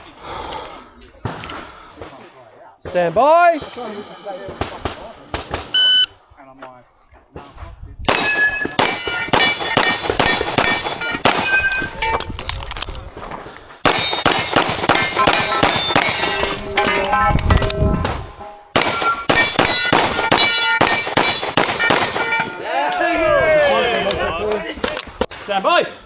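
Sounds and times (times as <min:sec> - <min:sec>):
bullets clanging on steel plates: 0:08.1 - 0:12.3, 0:13.8 - 0:17.7, 0:18.4 - 0:22.6
rapid pistol fire: 0:13.8 - 0:16.3, 0:18.8 - 0:22.3.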